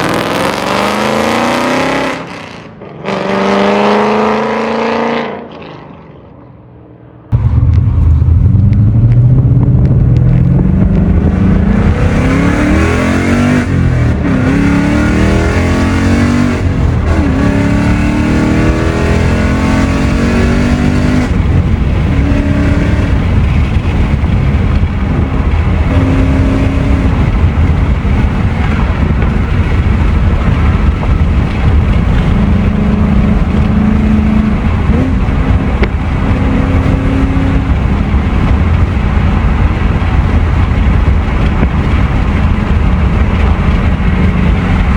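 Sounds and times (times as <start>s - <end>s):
car engine accelerating hard: 0.0s - 6.1s, 7.2s - 44.9s.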